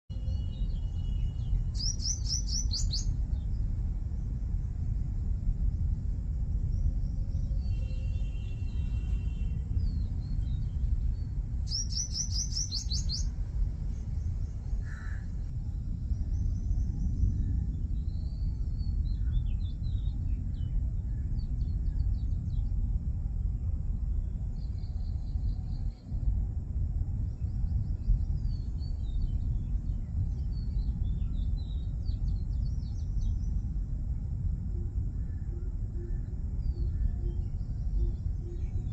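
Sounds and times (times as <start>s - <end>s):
constant low rumble: 0.0s - 38.9s
small birds chirping: 0.1s - 5.0s, 6.6s - 22.8s
loud bird trill: 0.2s - 3.2s, 11.6s - 13.4s.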